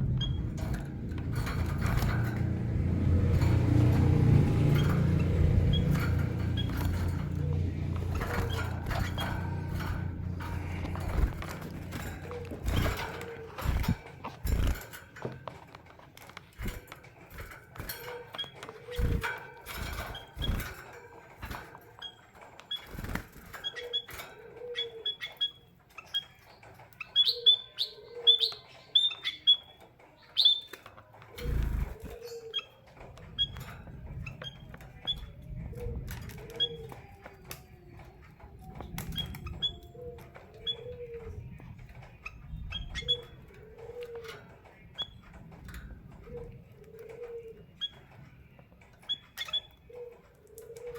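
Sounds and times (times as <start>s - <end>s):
birds thumping in cage: 0.0s - 50.9s
finches chirping: 4.6s - 14.9s, 16.6s - 30.7s, 38.6s - 45.3s, 49.0s - 50.9s.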